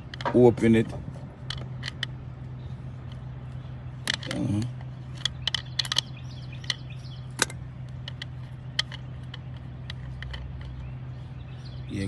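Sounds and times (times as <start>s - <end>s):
steady low hum: 0.0s - 12.0s
sharp metal clicks and taps: 1.4s - 2.2s, 3.0s - 11.0s.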